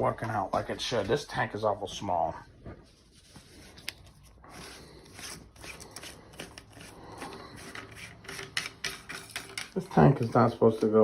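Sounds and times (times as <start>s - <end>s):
parts clicking and scraping in toilet tank: 6.3s - 11.0s.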